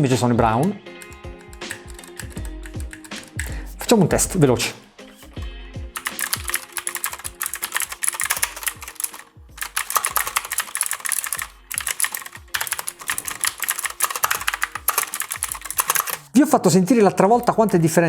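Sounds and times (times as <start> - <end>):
clicky mechanical keyboard typing: 1.0 - 4.0, 5.1 - 16.3.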